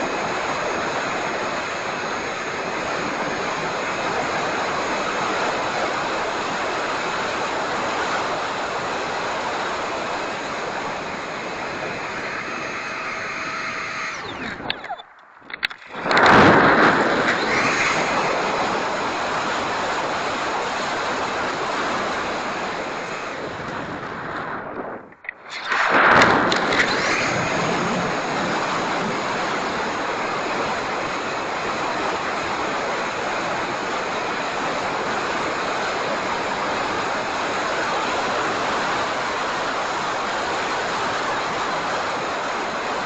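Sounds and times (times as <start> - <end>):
rc jet whoosh with high whine: 0.0 - 38.1.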